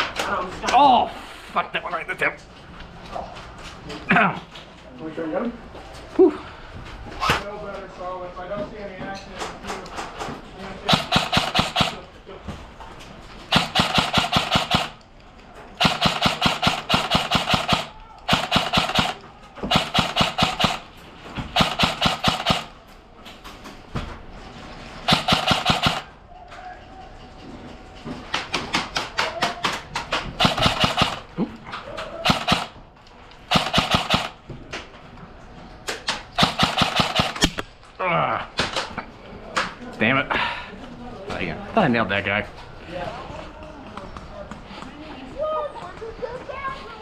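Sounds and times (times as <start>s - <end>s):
airsoft rifles firing full-auto: 10.8s - 12.2s, 13.4s - 15.1s, 15.8s - 22.8s, 25.0s - 26.2s, 30.1s - 31.4s, 32.2s - 32.8s, 33.4s - 34.5s, 36.0s - 37.6s.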